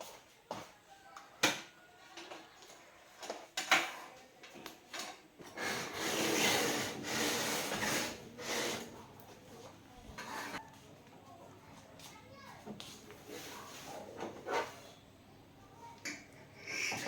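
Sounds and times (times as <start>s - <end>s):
scraping or rubbing: 5.6s - 8.9s, 10.1s - 10.6s, 13.2s - 15.0s.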